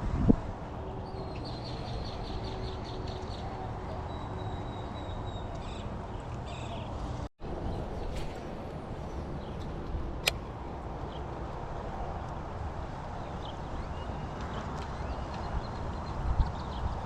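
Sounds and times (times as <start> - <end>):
wind on microphone: 0.0 - 5.2, 7.4 - 17.0
small birds calling: 1.0 - 7.0.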